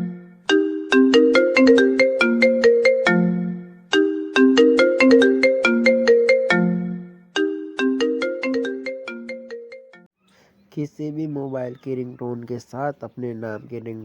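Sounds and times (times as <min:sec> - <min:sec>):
mobile phone ringtone melody: 0:00.0 - 0:10.1.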